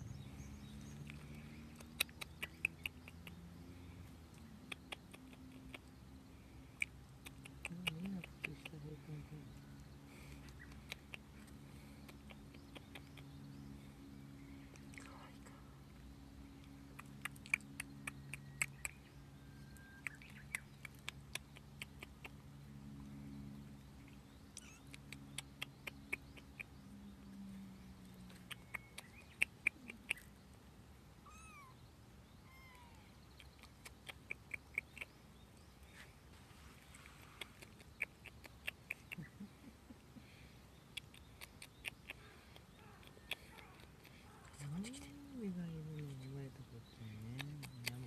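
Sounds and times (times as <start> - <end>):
kittens mewing: 24.6 - 25.0, 31.2 - 31.8, 32.4 - 33.2.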